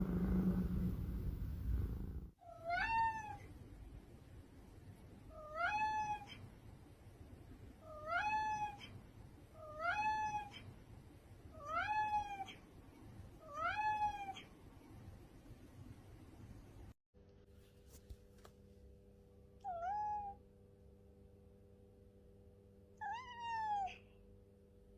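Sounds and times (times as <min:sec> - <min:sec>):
cat meowing: 0:02.4 - 0:03.5, 0:05.3 - 0:06.4, 0:07.8 - 0:08.9, 0:09.6 - 0:10.6, 0:11.6 - 0:12.6, 0:13.4 - 0:14.5, 0:19.6 - 0:20.4, 0:23.0 - 0:24.0.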